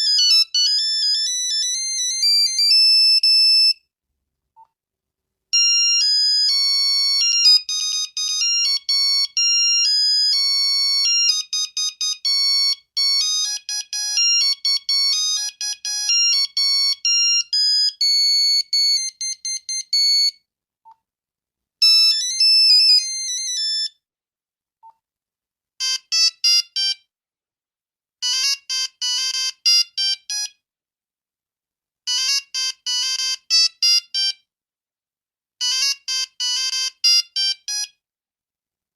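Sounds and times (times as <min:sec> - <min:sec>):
beeping ringtone melody: 0:00.0 - 0:03.8, 0:05.6 - 0:20.4, 0:35.6 - 0:37.9.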